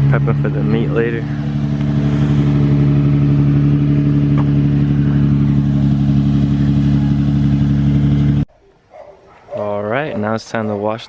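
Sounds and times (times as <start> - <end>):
car engine idling: 0.0 - 8.5.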